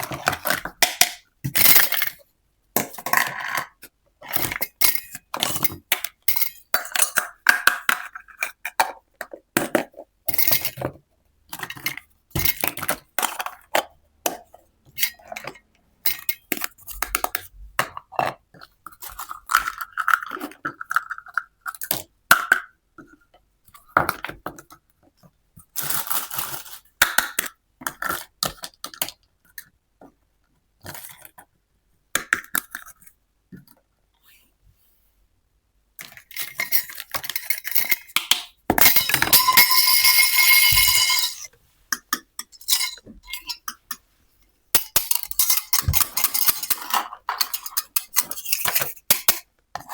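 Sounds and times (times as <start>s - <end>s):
toy kitchen pieces clinking: 36.0s - 41.5s, 42.2s - 44.0s, 44.8s - 49.4s.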